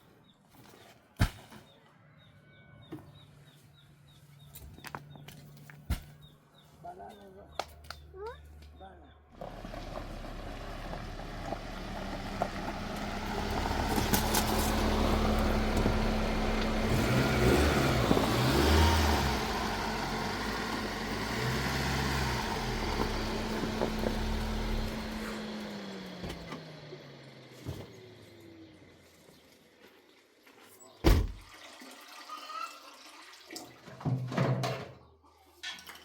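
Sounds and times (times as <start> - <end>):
vehicle engine running: 9.4 - 29.9.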